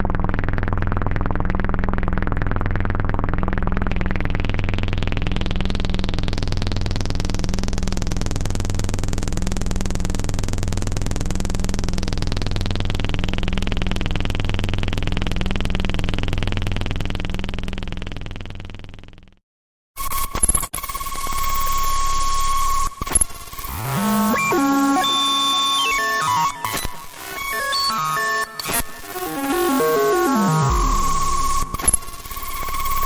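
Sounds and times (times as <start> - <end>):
synthesized pulsing drone: 23.4 - 33.0.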